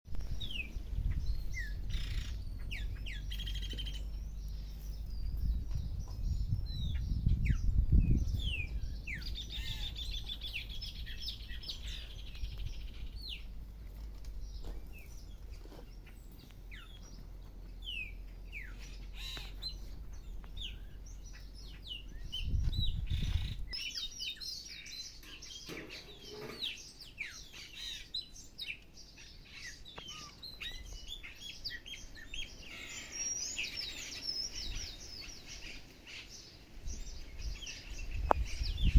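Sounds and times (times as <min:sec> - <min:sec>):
birds chirping: 0:00.1 - 0:38.9
bird trill: 0:00.4 - 0:13.5.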